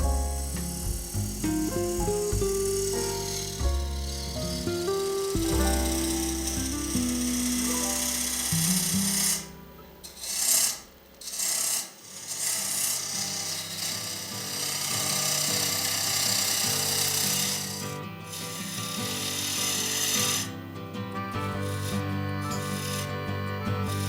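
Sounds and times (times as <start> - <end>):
background music: 0.0 - 10.4, 19.3 - 24.0
wood lathe tool hiss: 0.0 - 20.6, 21.3 - 24.0.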